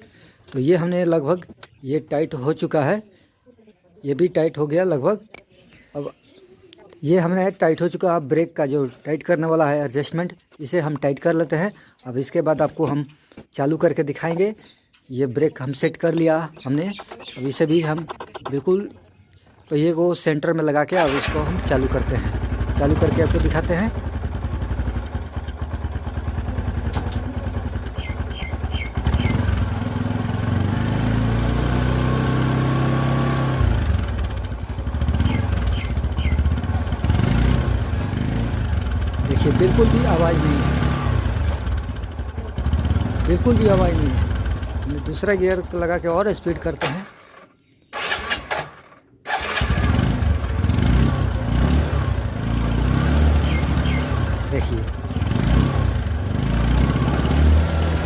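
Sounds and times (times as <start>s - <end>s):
motorcycle engine running: 20.9s - 47.2s, 49.3s - 58.0s.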